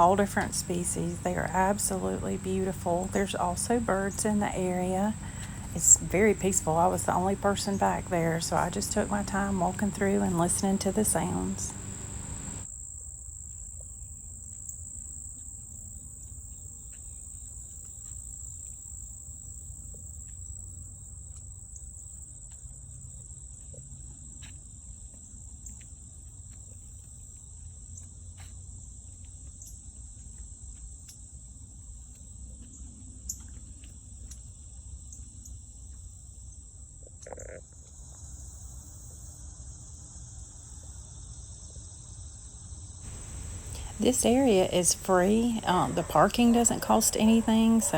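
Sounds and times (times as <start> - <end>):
insect chorus drone: 0.0 - 47.9.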